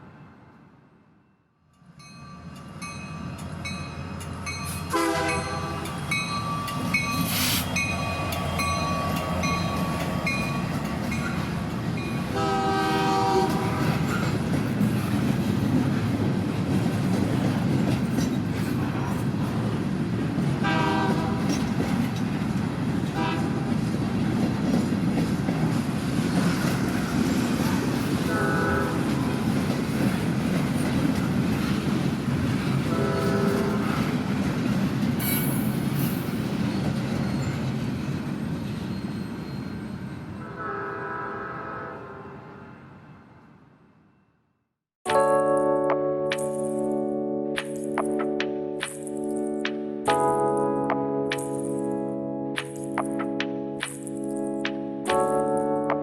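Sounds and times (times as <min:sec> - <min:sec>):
steam train wheels clattering: 0:04.2 - 0:38.3
steam train whistle blasts: 0:04.9 - 0:06.2, 0:12.4 - 0:13.9, 0:20.6 - 0:21.4, 0:28.3 - 0:29.2, 0:32.9 - 0:34.0, 0:40.4 - 0:42.6.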